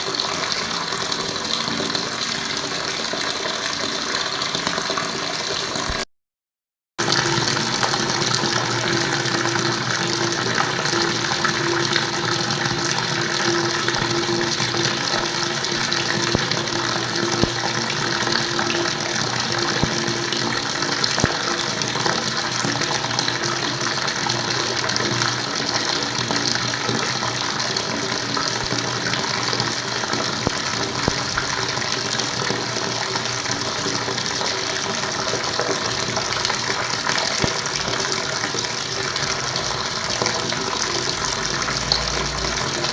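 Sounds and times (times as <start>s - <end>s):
water rushing and splashing: 7.0s - 23.4s.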